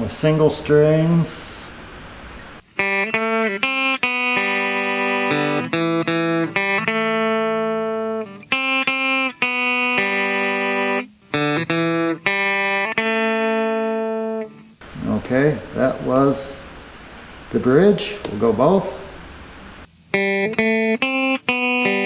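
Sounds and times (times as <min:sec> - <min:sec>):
clean electric guitar notes: 0:02.8 - 0:15.0, 0:20.1 - 0:22.0.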